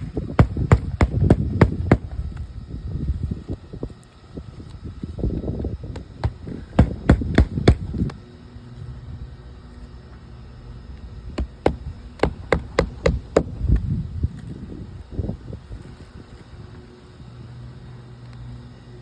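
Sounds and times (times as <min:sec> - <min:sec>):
hammer driving nails into shingle: 0:00.1 - 0:02.2, 0:06.0 - 0:08.1, 0:11.4 - 0:13.8.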